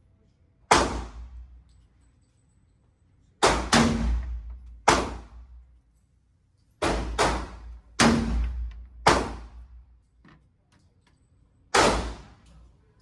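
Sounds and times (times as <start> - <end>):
gunshots with echo: 11.8 - 12.4.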